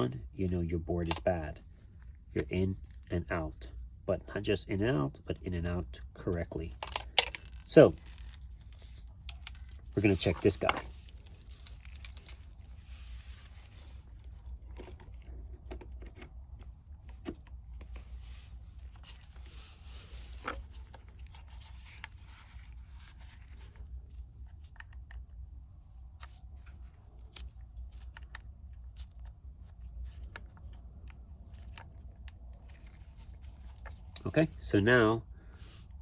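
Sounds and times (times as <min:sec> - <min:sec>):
steady low hum: 0:00.0 - 0:36.0
clicks scrapes and rustles: 0:06.6 - 0:25.5, 0:26.1 - 0:34.3.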